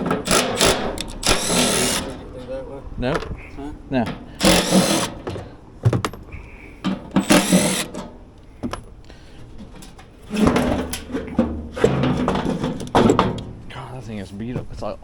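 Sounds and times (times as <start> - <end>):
power tool running: 0.0 - 2.5, 4.2 - 5.6, 7.1 - 8.1
metal clicks and clanks: 0.0 - 9.0, 9.6 - 13.7.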